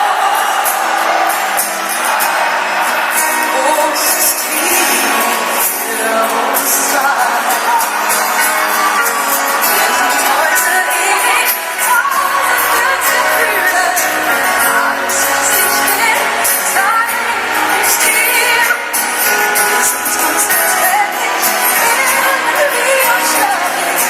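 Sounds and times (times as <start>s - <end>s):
pop song with singing: 0.0s - 24.0s.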